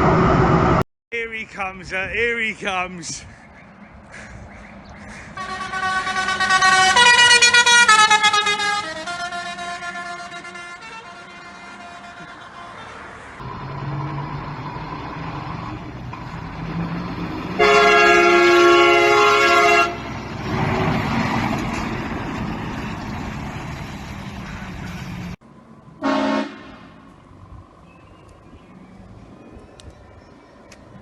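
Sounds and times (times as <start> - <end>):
traffic noise: 0.0 - 31.0
air train horn: 5.4 - 12.9, 17.6 - 20.0, 26.0 - 27.0.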